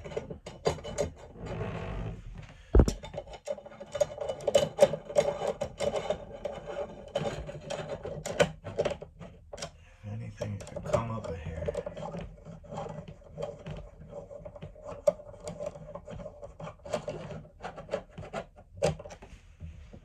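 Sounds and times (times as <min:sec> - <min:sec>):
loud knock: 0:02.8 - 0:03.0.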